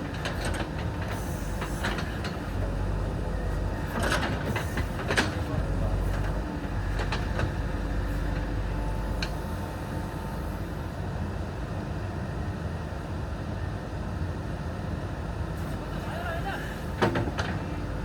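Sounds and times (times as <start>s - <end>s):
diesel engine running: 0.0s - 10.9s, 15.6s - 18.0s.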